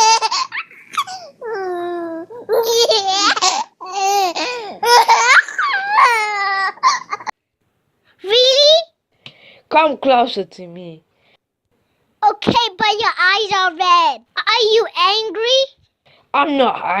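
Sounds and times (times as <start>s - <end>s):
child making wordless vocal sounds: 1.4s - 2.6s.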